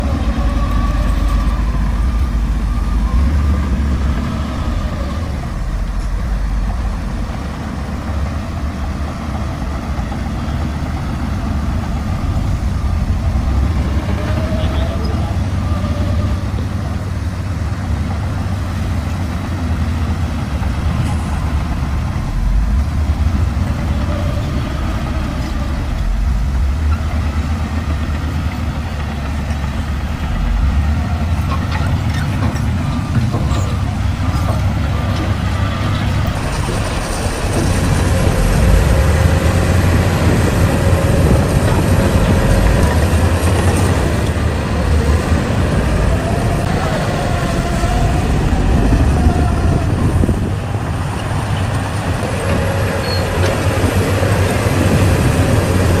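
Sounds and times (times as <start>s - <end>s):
bulldozer diesel engine drone: 0.0s - 56.0s.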